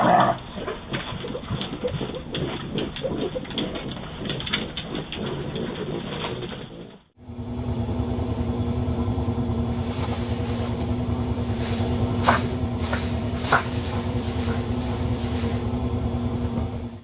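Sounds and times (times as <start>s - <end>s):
mechanical motor hum: 7.2s - 17.0s.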